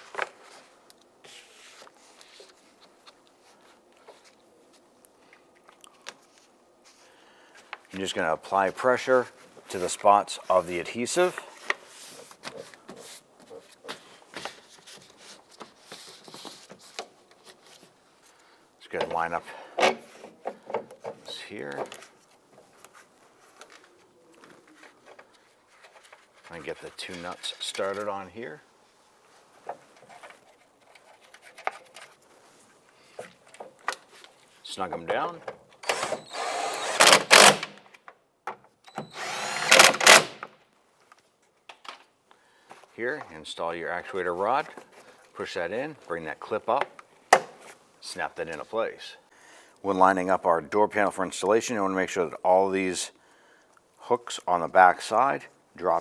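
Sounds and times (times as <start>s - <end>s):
soft taps and rustles of plastic: 29.3s - 35.7s
cordless power driver running: 35.9s - 37.6s, 39.0s - 40.3s.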